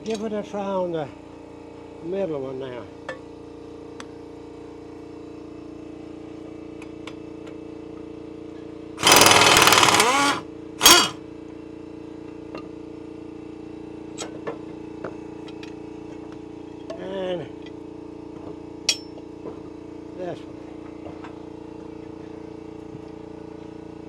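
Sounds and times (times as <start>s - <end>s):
pneumatic impact wrench hammering: 9.0s - 11.2s.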